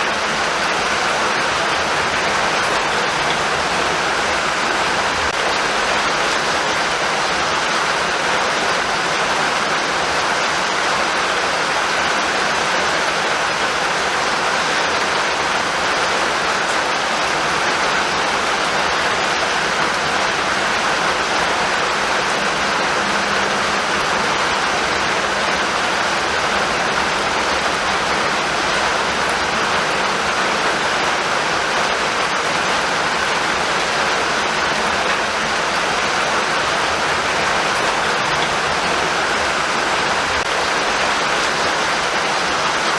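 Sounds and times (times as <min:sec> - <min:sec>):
steady rainfall: 0:00.0 - 0:42.9.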